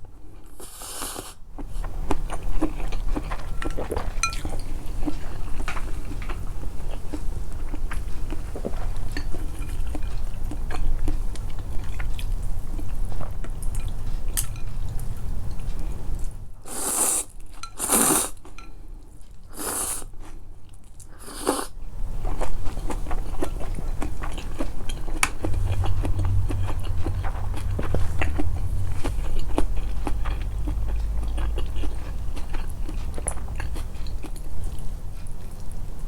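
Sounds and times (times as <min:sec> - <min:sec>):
chewing with wet clicks: 0:01.5 - 0:16.4, 0:22.2 - 0:36.0
noodle slurps: 0:16.7 - 0:18.4.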